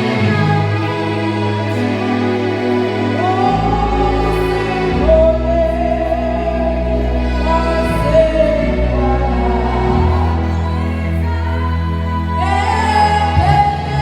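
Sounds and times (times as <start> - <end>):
deep bass: 0.0 - 14.0.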